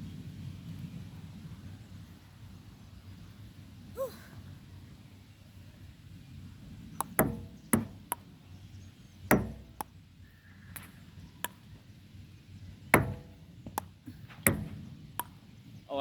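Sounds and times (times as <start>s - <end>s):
table tennis ball clicking: 7.0s - 8.3s, 9.3s - 10.0s, 13.0s - 15.4s.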